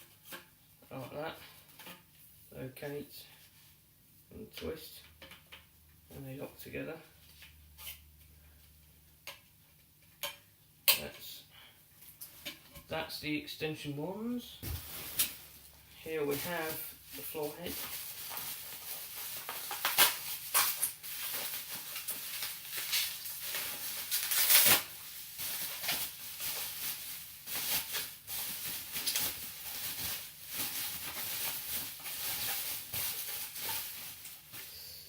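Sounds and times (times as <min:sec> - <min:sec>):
packaging rustling and crackling: 0:14.6 - 0:34.8.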